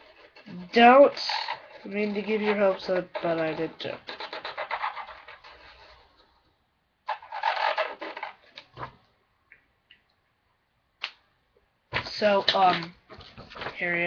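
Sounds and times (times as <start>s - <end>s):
marker scratching on paper: 0.0s - 6.3s, 7.1s - 8.9s.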